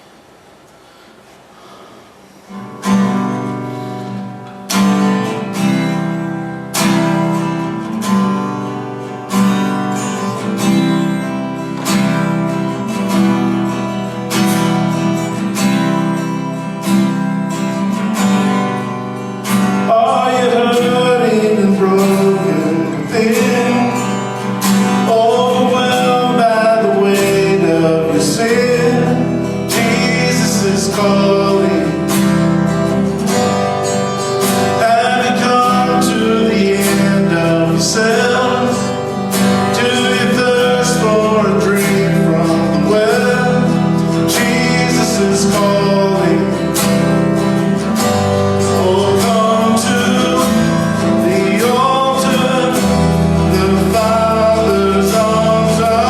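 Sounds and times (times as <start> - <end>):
acoustic guitar: 0.0 - 56.0
man singing: 19.5 - 56.0.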